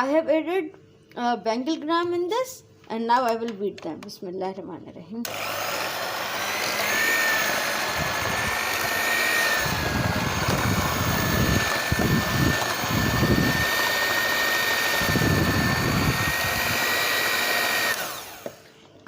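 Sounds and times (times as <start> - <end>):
electric hand beater whining: 5.3 - 18.7
beaters churning thick mash: 5.6 - 18.5.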